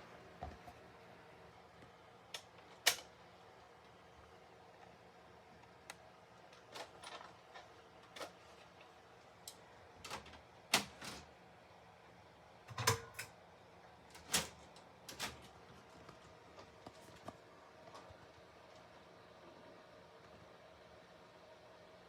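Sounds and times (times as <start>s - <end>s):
cassette handling clicks: 2.4s - 3.2s, 9.5s - 11.3s.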